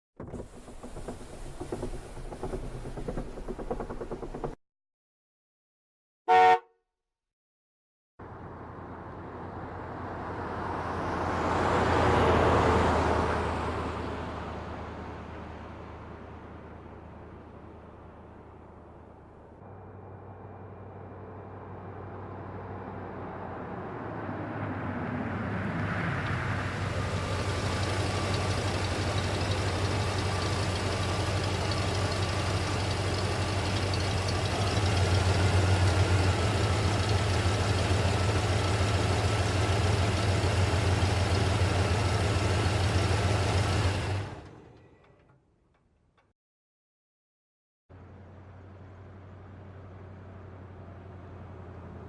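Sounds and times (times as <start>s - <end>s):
pickup truck engine running: 0.2s - 4.6s, 26.8s - 44.4s.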